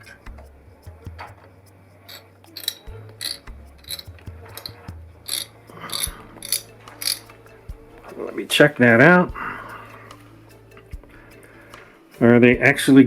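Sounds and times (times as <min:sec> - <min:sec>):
soft background music: 0:00.0 - 0:13.0
small metallic clicks and scrapes: 0:01.2 - 0:07.4.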